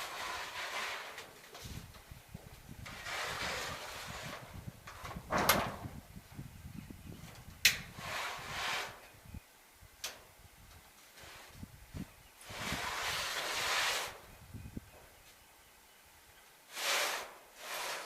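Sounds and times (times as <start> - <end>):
shingles scraping and rustling: 0.0 - 2.0, 2.8 - 5.9, 7.9 - 9.0, 12.4 - 14.3, 16.7 - 18.0.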